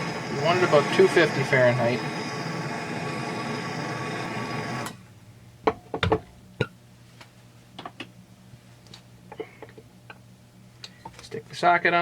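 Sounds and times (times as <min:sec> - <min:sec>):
torch flame burning: 0:00.0 - 0:05.1.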